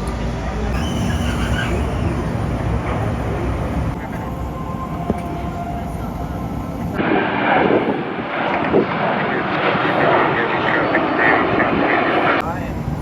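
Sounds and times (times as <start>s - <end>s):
jet engine rumble with whine: 0.0s - 13.0s.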